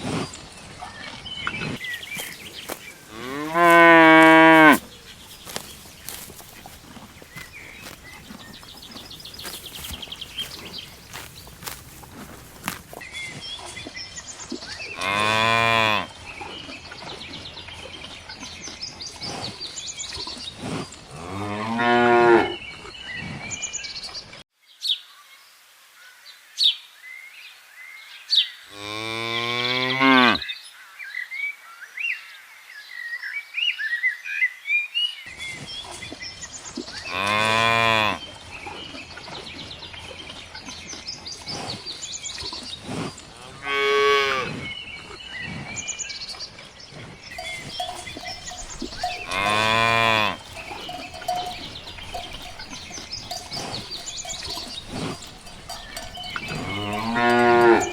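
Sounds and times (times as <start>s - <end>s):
cows mooing: 2.0s - 12.9s, 15.0s - 16.1s, 28.8s - 30.4s, 47.3s - 57.9s.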